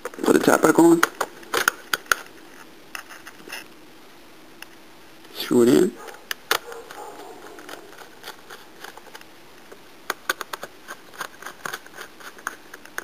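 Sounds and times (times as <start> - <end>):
screwdriver clicking and scraping: 6.0 - 9.3, 10.2 - 13.0.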